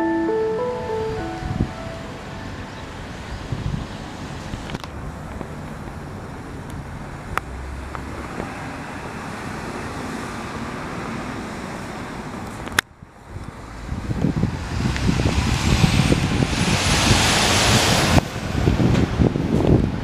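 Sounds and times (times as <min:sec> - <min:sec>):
road traffic passing cars: 0:00.0 - 0:20.0.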